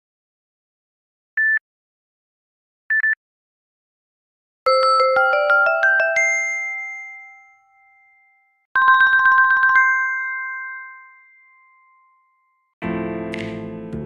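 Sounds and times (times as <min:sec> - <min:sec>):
phone notification chimes: 0:04.7 - 0:12.1.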